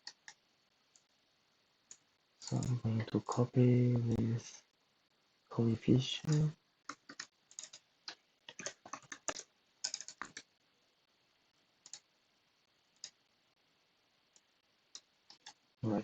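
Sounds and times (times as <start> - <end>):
keyboard and mouse clicks: 0.0 - 0.4, 1.9 - 2.8, 6.3 - 10.5, 11.8 - 12.1, 13.0 - 13.2, 14.9 - 15.6.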